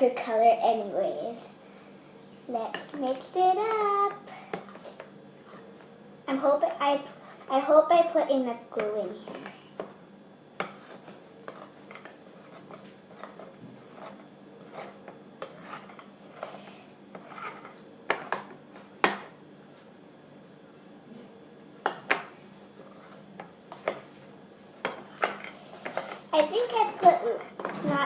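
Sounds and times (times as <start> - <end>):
spoon stirring thick slime: 10.6 - 18.5.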